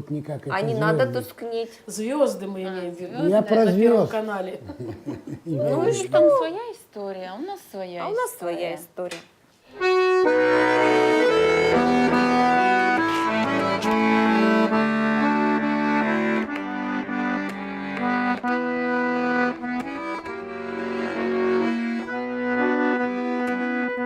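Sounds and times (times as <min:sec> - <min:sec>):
button accordion playing chords: 0:09.7 - 0:24.0.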